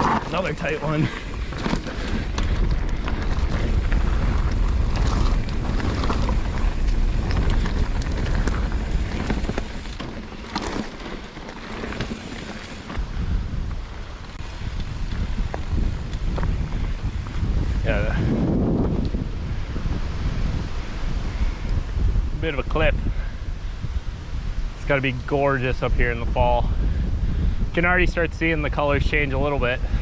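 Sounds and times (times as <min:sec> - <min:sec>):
bike knocks and rattles: 0:00.0 - 0:13.0
wind rumble on microphone: 0:00.0 - 0:30.0.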